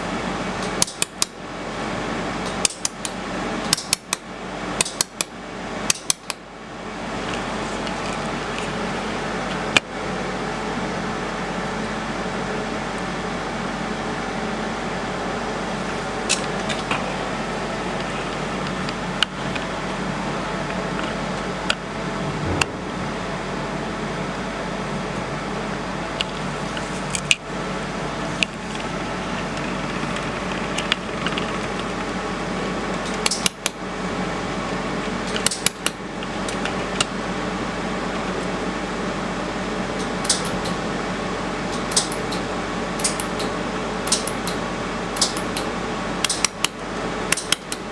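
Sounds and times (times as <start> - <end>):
fan-like equipment hum: 0.0 - 47.9
sharp metallic clicks: 41.8 - 42.4, 43.0 - 43.5, 44.1 - 44.6, 45.2 - 47.8.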